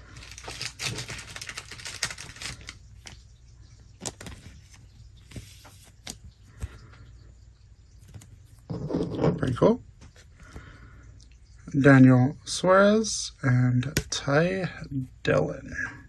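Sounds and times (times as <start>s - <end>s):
cards sliding and flicking: 4.0s - 6.7s.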